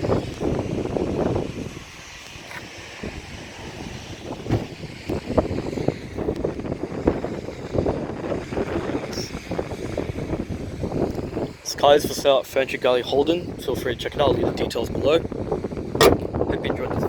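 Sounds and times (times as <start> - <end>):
wind buffeting microphone: 0.0 - 17.0
low thumps: 16.0 - 16.3.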